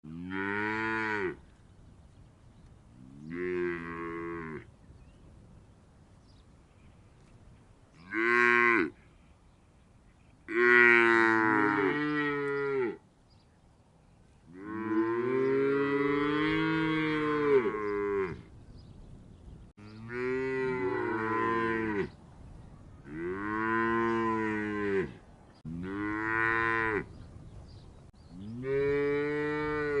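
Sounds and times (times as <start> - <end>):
cow mooing: 0.0 - 1.4, 3.1 - 4.7, 10.5 - 13.0, 14.5 - 18.4, 19.8 - 22.2, 23.1 - 27.1, 28.4 - 30.0.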